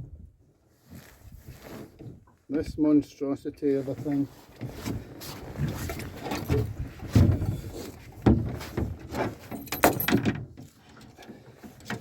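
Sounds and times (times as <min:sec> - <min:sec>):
metal gear clunking and rattling: 0:05.6 - 0:12.0.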